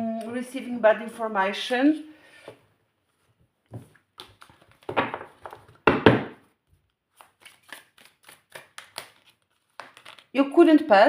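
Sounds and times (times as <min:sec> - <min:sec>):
cards being shuffled: 0:03.7 - 0:05.8, 0:06.7 - 0:10.3.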